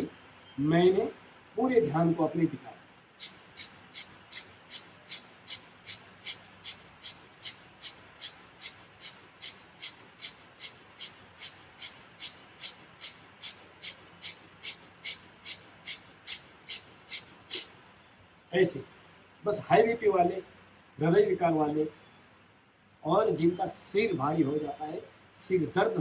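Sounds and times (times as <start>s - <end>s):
forceful rapid breaths through nose: 3.2s - 17.7s.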